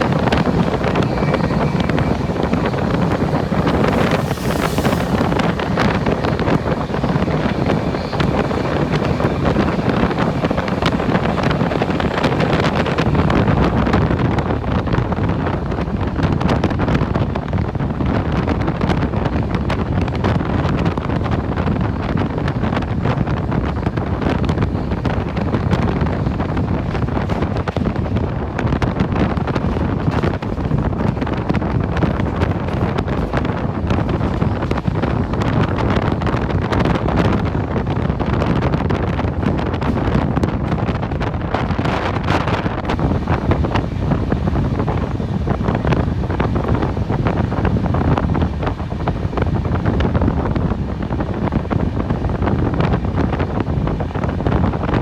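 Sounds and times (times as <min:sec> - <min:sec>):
train running noise with rattling: 0:00.0 - 0:55.0
wind buffeting microphone: 0:00.0 - 0:55.0.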